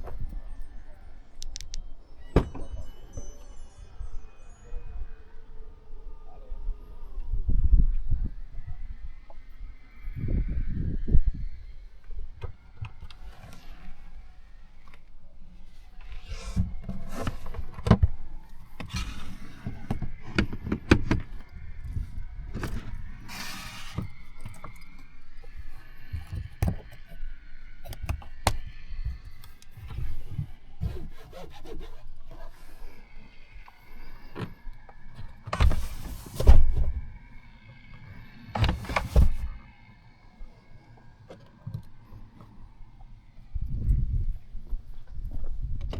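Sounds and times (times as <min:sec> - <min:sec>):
clicks knocks and scrapes: 0:16.0 - 0:24.8, 0:38.6 - 0:39.6.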